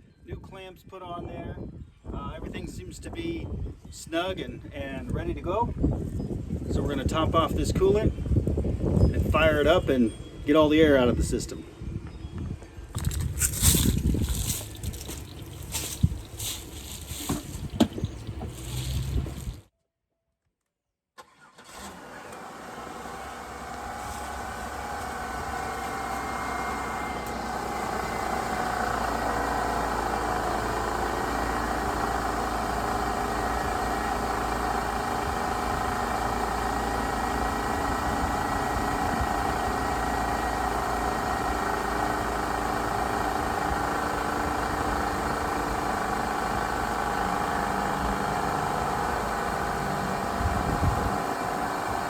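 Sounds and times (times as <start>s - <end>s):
car engine starting and idling: 13.0s - 19.6s, 21.2s - 52.0s.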